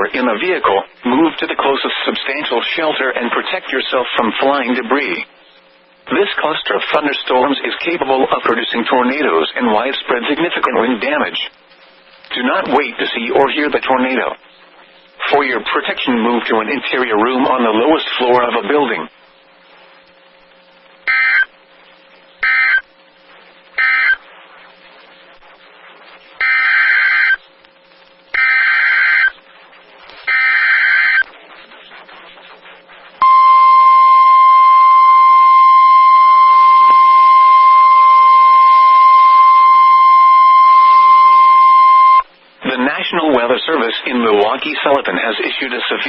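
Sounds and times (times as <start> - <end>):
steady warning alarm tone: 21.1 - 21.5, 22.4 - 22.8, 23.8 - 24.2, 26.4 - 27.4, 28.3 - 29.4, 30.3 - 31.3, 33.2 - 42.3
data bursts: 33.2 - 42.2.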